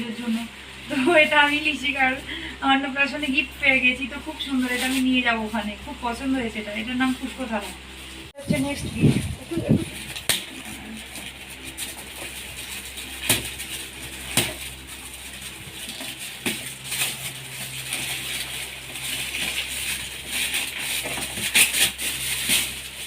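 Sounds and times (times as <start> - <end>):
gift wrapping paper tearing: 9.0 - 23.0.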